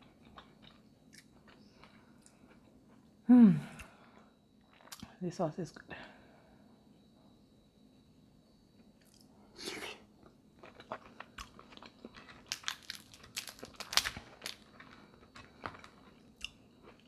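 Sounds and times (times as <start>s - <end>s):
crab shells cracking: 12.2s - 15.0s.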